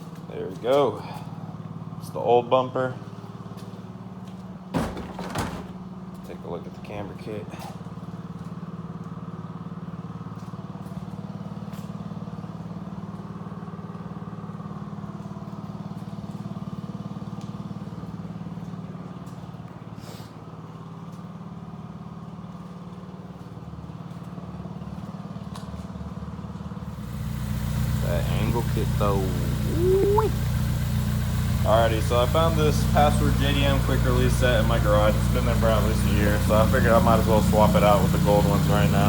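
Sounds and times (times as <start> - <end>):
vehicle engine idling: 0.0 - 39.0.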